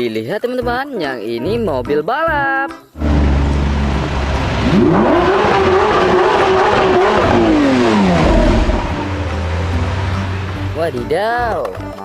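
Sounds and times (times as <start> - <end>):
race car engine revving: 3.0 - 11.2.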